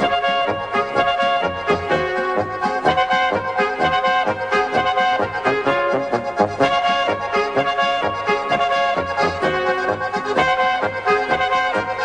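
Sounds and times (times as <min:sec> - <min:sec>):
instrumental music: 0:00.0 - 0:12.0.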